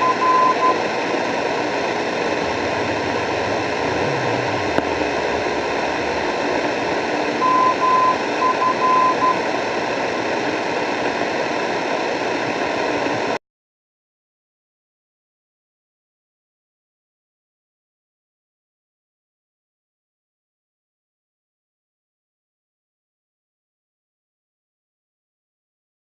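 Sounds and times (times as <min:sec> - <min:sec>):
on-off beeps: 0:00.0 - 0:00.8, 0:02.5 - 0:09.5
radio static hiss: 0:00.0 - 0:13.4.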